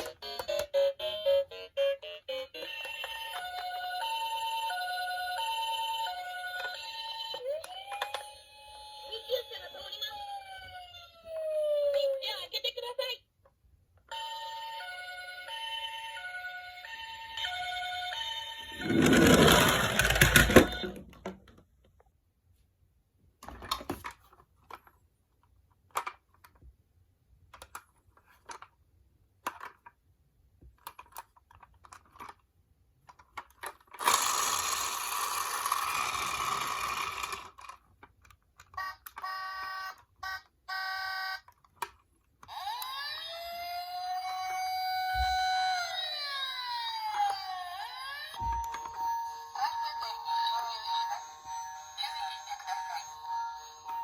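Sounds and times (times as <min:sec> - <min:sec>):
toy siren beeping: 0:00.0 - 0:12.1, 0:38.7 - 0:41.6, 0:42.5 - 0:54.0
toy siren wailing: 0:00.0 - 0:12.2, 0:38.7 - 0:41.5, 0:42.5 - 0:54.0
toy cars rattling down slope: 0:18.7 - 0:21.0, 0:33.6 - 0:37.9.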